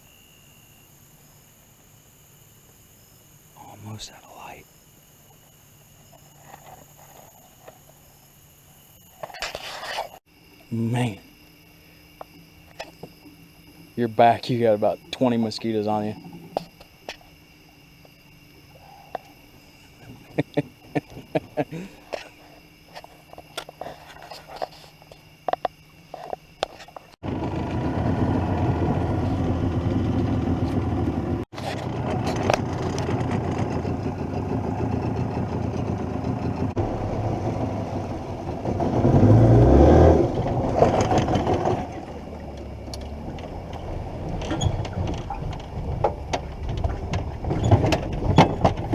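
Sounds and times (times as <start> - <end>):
engine running: 27.2 - 48.9.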